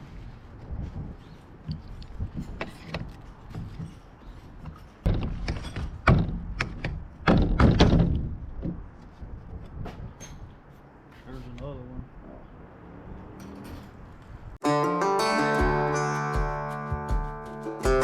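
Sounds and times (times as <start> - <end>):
tools and parts knocking: 4.6 - 8.8
clattering and thuds: 4.6 - 8.9.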